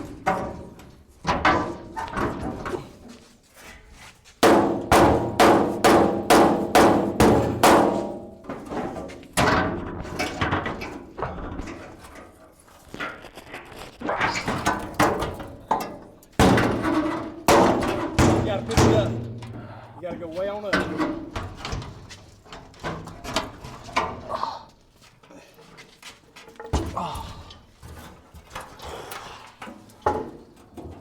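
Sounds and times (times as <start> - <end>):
hammer blows on sheet metal: 4.4 - 8.4.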